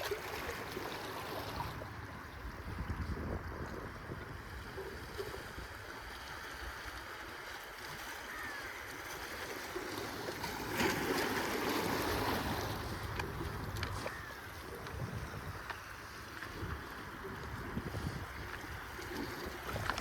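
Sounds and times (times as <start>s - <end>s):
sea water lapping against jetty: 0.0s - 20.0s
wind buffeting microphone: 1.8s - 6.1s, 11.8s - 20.0s.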